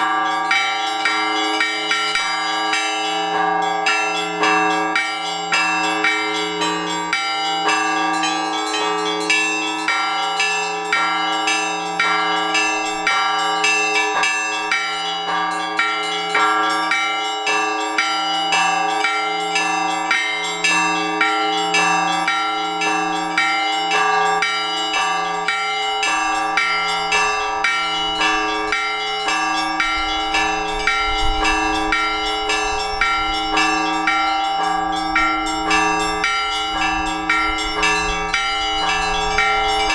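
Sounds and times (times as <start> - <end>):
hum of large bells: 0.0 - 39.9
small church bells pealing: 0.0 - 39.9.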